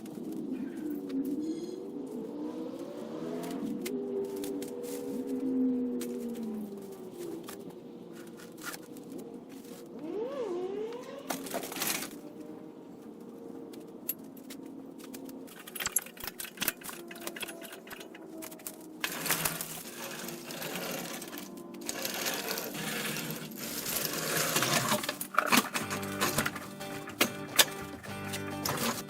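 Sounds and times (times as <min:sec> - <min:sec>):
mechanical clicking and rattling: 0:14.1 - 0:29.0
metal clattering: 0:15.5 - 0:29.0.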